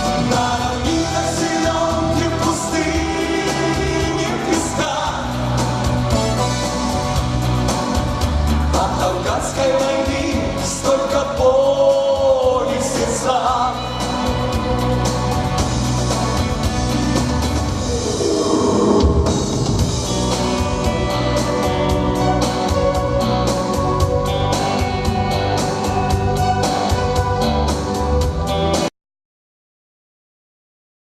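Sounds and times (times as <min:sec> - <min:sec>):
instrumental music with steady beat: 0:19.1 - 0:28.9.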